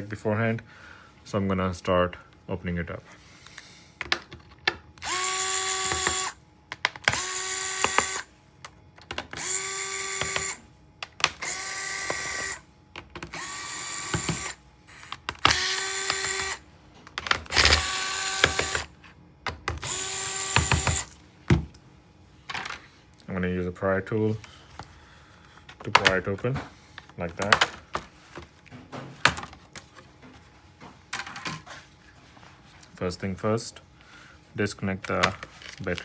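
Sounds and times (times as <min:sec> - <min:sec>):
electric screwdriver whirring: 0:05.0 - 0:06.4, 0:07.0 - 0:08.3, 0:09.3 - 0:10.6, 0:11.2 - 0:12.6, 0:13.3 - 0:16.6, 0:17.3 - 0:18.9, 0:19.7 - 0:21.2.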